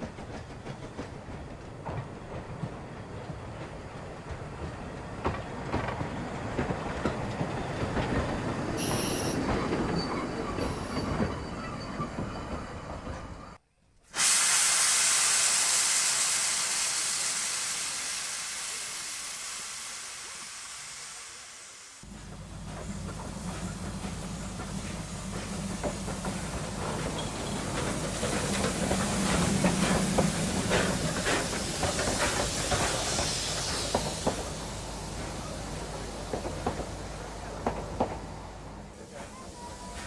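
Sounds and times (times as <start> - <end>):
steam locomotive rattling and clanking: 0.0 - 13.6, 22.0 - 40.0
steam hissing: 8.2 - 11.3, 14.1 - 40.0
wheel squeals: 8.7 - 13.6, 22.6 - 30.0.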